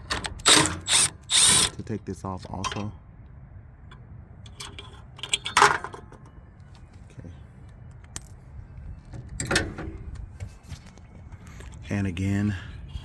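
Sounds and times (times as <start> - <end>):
metal tools clinking and rattling: 2.6 - 2.9, 4.5 - 6.3.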